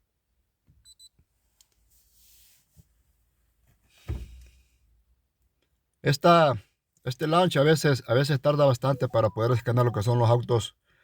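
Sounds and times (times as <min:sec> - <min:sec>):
soft thump: 0:04.0 - 0:04.4
double electronic beep: 0:08.9 - 0:10.6.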